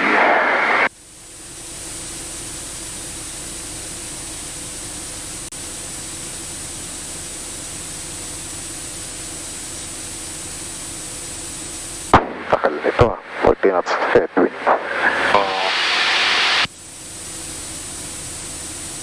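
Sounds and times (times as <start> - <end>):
turboprop cockpit noise: 0.0 - 19.0.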